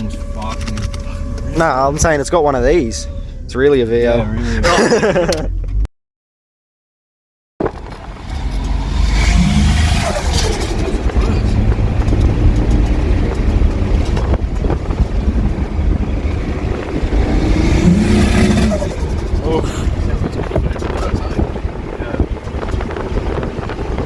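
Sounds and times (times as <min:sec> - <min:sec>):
car engine running loudly: 0:07.7 - 0:24.0.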